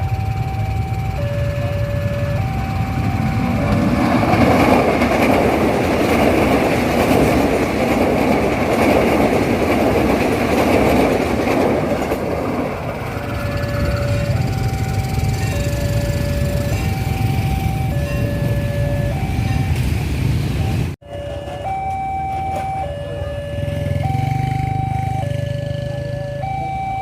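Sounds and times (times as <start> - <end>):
two-tone level-crossing siren: 0.0 - 5.3, 12.8 - 19.9, 20.6 - 27.0
passing train running noise: 0.0 - 27.0.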